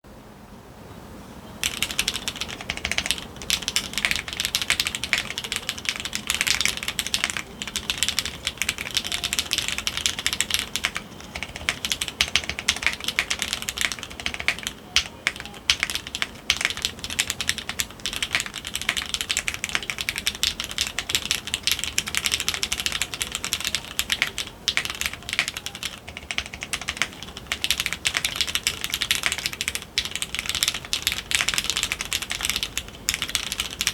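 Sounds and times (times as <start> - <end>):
mechanical keyboard typing: 1.6 - 33.9.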